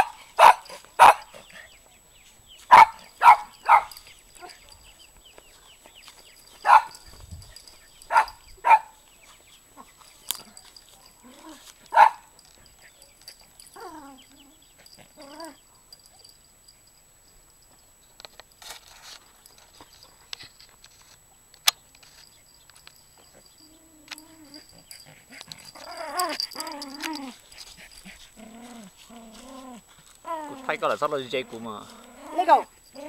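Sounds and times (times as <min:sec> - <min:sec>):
young dog barking sharply: 0:00.0 - 0:01.4, 0:02.7 - 0:04.6, 0:06.6 - 0:07.0, 0:08.1 - 0:09.0, 0:11.9 - 0:12.3
faint wavering whine: 0:10.0 - 0:33.0.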